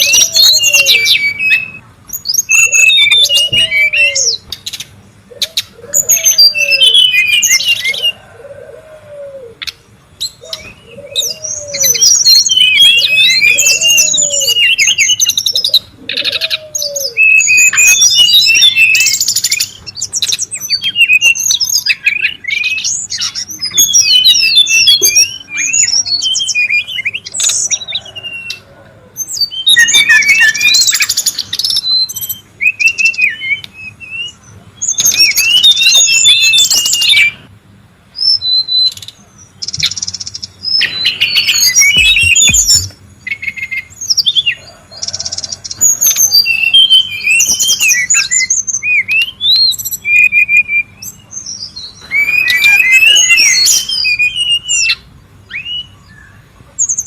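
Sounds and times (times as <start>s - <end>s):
bird whistling: 0.0s - 4.8s, 5.4s - 8.3s, 10.3s - 37.5s, 38.2s - 57.0s
bird chattering: 38.7s - 56.0s.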